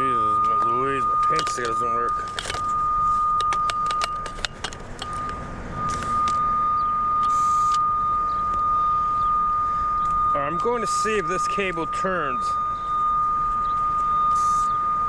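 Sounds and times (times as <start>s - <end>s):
high-pitched receiver tone: 0.0s - 15.0s
sharp clicks and rattles: 0.3s - 7.8s.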